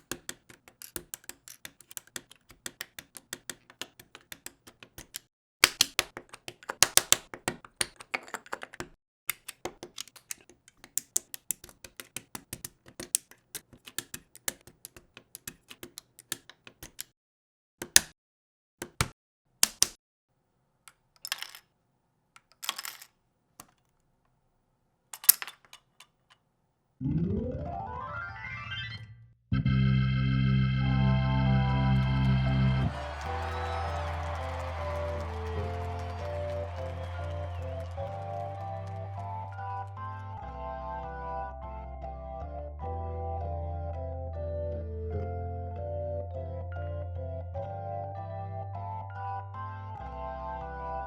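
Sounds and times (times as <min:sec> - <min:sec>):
plastic bricks clicking together: 0:00.0 - 0:17.1, 0:20.9 - 0:21.7, 0:22.3 - 0:24.0, 0:25.2 - 0:26.4.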